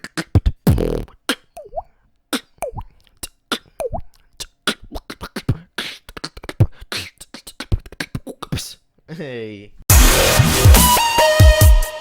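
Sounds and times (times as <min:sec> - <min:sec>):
beatbox kick and snare: 0:00.0 - 0:08.8, 0:09.9 - 0:12.0.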